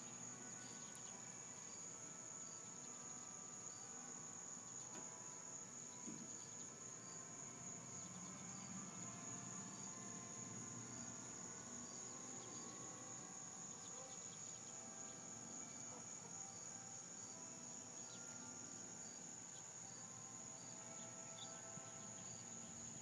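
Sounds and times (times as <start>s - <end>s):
high-pitched insect trill: 0.0s - 23.0s.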